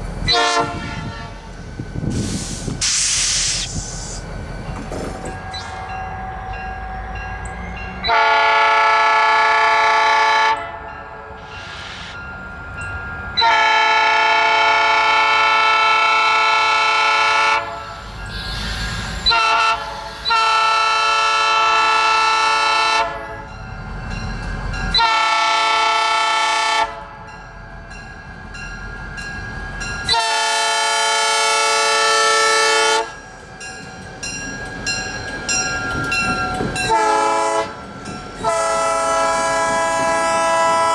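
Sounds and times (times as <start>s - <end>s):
locomotive horn blasts: 0.3s - 1.5s, 8.0s - 10.8s, 13.4s - 17.9s, 19.2s - 23.4s, 24.9s - 27.2s, 30.1s - 33.2s, 36.8s - 37.8s, 38.4s - 40.9s.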